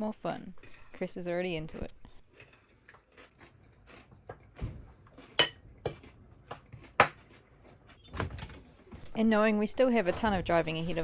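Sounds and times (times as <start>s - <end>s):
cutlery clinking on dishes: 5.4s - 7.2s.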